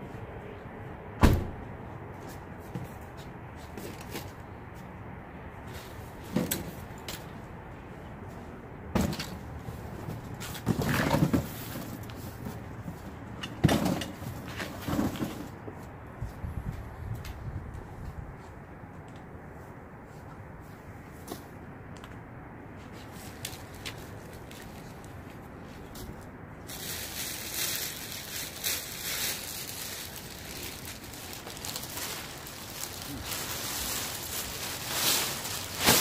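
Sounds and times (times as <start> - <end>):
low background noise: 0.0 - 36.0
rustling: 22.8 - 36.0.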